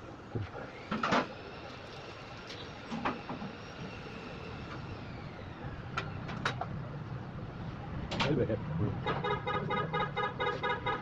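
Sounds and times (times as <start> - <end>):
steady mechanical hum: 0.0 - 11.0.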